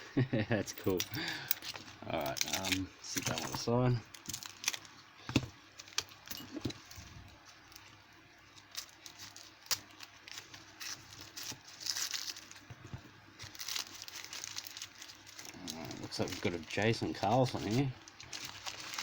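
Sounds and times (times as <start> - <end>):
packaging crinkling and rustling: 1.6 - 19.0.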